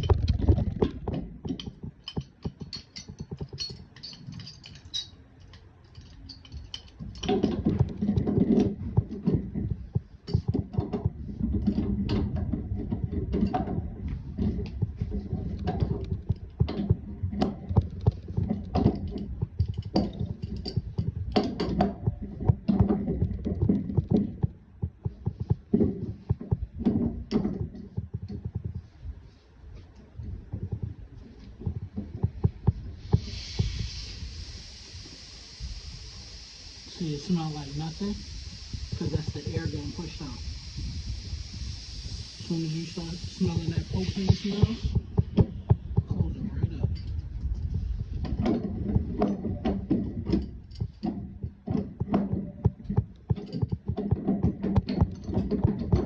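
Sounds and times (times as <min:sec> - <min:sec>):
rumbling handling noise: 0:00.0 - 0:56.0
clicks and knocks: 0:45.0 - 0:56.0.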